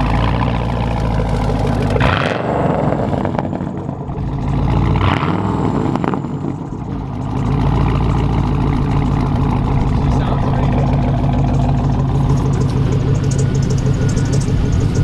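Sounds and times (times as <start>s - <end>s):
car engine running at low revs: 0.0s - 15.0s.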